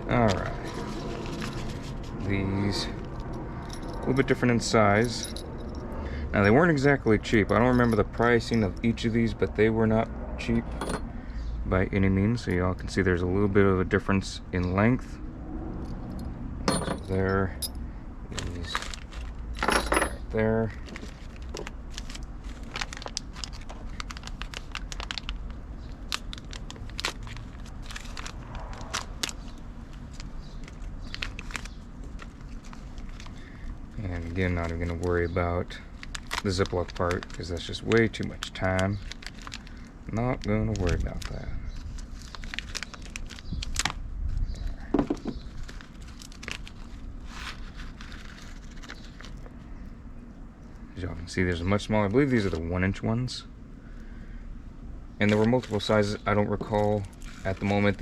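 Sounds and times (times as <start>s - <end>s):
plastic bag crinkling: 18.3s - 19.6s, 20.5s - 44.0s, 45.0s - 49.6s, 55.2s - 58.0s.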